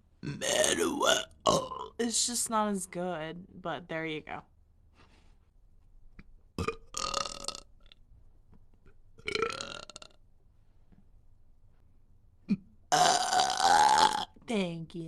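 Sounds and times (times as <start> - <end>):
woman belching: 0.2 - 2.0, 6.6 - 7.6, 12.5 - 14.3.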